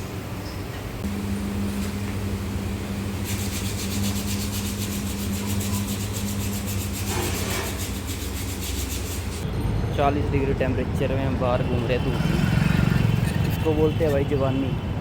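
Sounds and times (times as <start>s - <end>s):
low mechanical hum: 0.0s - 9.4s.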